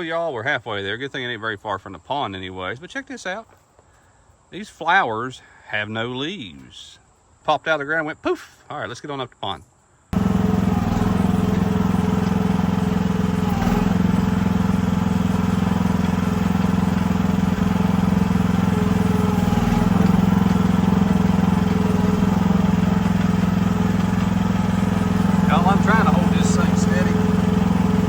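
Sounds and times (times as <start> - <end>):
small gasoline engine running: 10.2 - 28.0.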